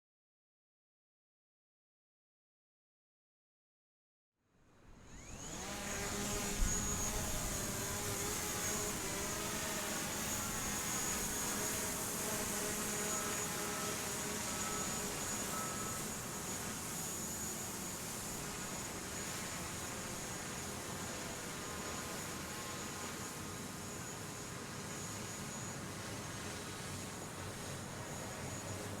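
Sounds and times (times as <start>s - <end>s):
high insect drone: 5.2s - 25.8s
short beeps: 14.6s - 16.0s.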